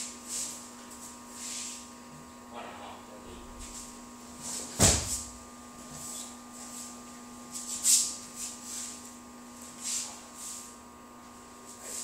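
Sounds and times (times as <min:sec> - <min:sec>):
body thudding onto mat: 0:04.6 - 0:05.4.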